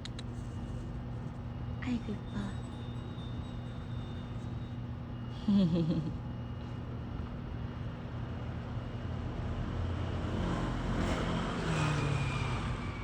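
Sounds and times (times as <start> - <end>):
passing vehicle rumble: 9.2 - 13.0.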